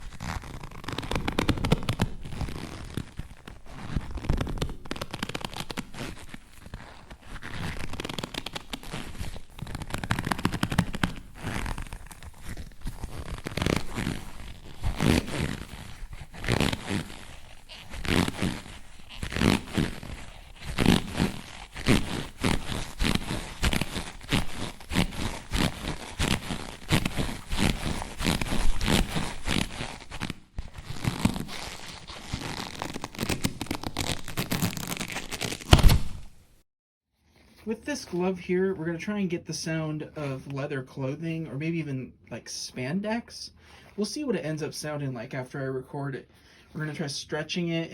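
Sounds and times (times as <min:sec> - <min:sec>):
leather glove creaking and squeaking: 0:00.0 - 0:36.6.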